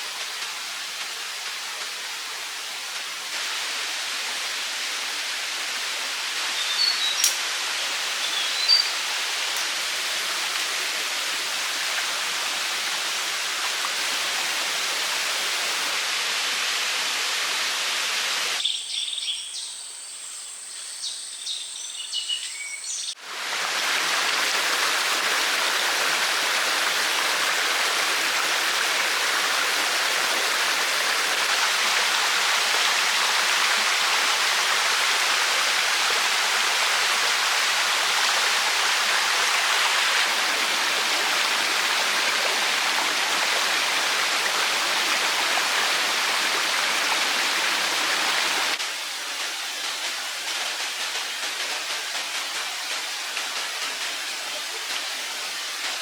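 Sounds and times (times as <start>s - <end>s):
water rushing: 0.0s - 18.6s, 23.1s - 56.0s
bird chirps: 6.6s - 7.3s, 8.2s - 8.9s, 18.6s - 23.2s.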